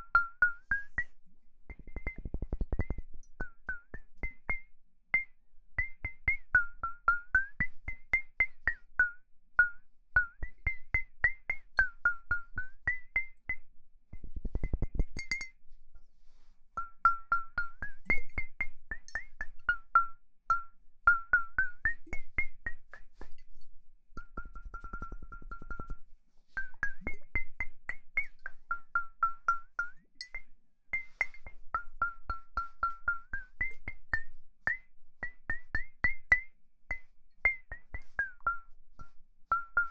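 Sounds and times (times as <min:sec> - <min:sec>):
rapid ringing clicking taps: 0:24.2 - 0:26.0.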